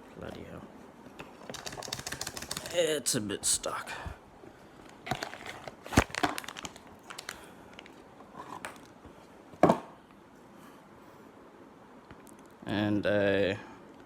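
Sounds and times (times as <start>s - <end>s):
packaging crinkling and rustling: 1.4s - 2.8s, 4.8s - 9.0s.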